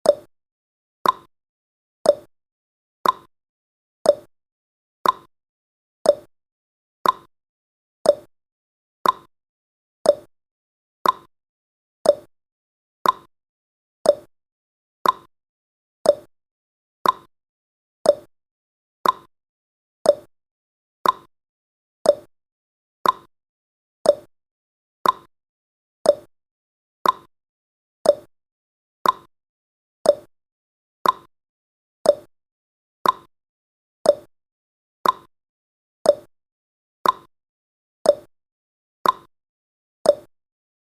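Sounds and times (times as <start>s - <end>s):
clock ticking: 3.0s - 3.3s, 5.0s - 5.3s, 7.0s - 7.3s, 9.0s - 9.3s, 11.0s - 11.3s, 13.0s - 13.3s, 15.0s - 15.3s, 16.1s - 16.3s, 17.0s - 17.3s, 19.0s - 19.3s, 21.0s - 21.3s, 22.1s - 22.3s, 23.0s - 23.3s, 24.1s - 24.3s, 25.0s - 25.3s, 26.1s - 26.3s, 27.0s - 27.3s, 28.0s - 28.3s, 29.0s - 29.3s, 30.1s - 30.3s, 31.0s - 31.3s, 33.0s - 33.3s, 34.1s - 34.3s, 35.0s - 35.3s, 37.0s - 37.3s, 38.1s - 38.3s, 39.0s - 39.3s, 40.1s - 40.3s.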